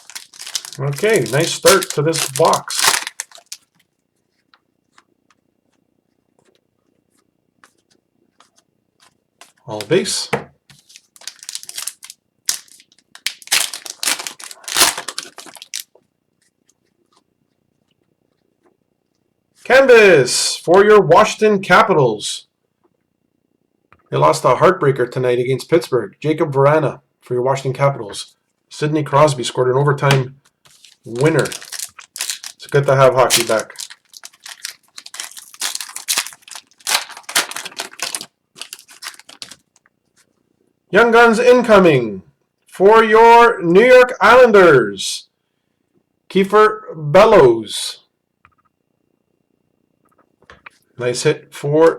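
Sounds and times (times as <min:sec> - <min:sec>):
card pack wrapper crinkling and tearing: 0:00.0 - 0:03.8, 0:10.7 - 0:16.0, 0:30.7 - 0:39.8
cards being handled: 0:00.0 - 0:05.8, 0:10.7 - 0:15.9, 0:30.6 - 0:39.9.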